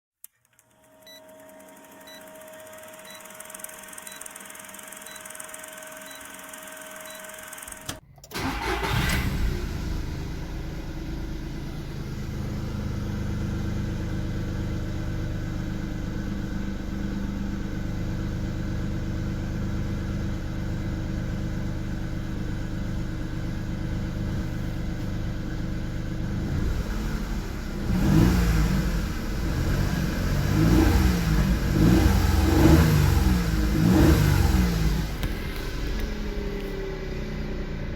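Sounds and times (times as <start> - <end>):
car engine starting and idling: 1.1 - 37.9
soft beeps: 3.0 - 4.3.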